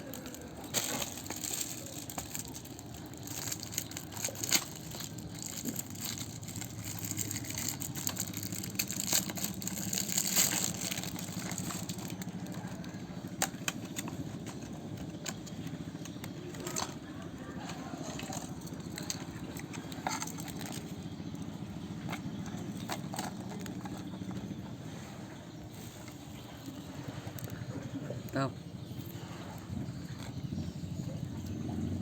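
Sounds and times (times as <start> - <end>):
plastic packaging clicks and crinkles: 0.0 - 21.4, 22.0 - 24.4
low steady hum: 0.0 - 32.0.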